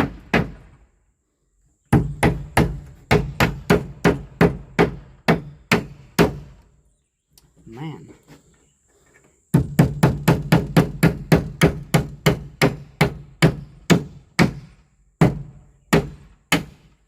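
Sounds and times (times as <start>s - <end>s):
hammer driving nails into wood: 9.5s - 17.0s.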